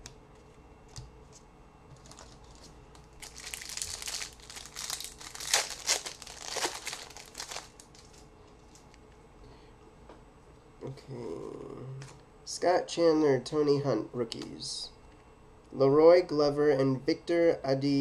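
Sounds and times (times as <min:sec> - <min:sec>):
card pack wrapper crinkling: 0:02.0 - 0:08.9.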